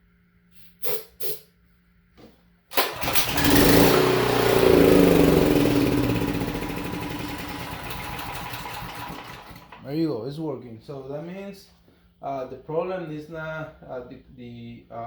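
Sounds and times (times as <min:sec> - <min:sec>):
generator engine starting and running: 0:02.7 - 0:10.0.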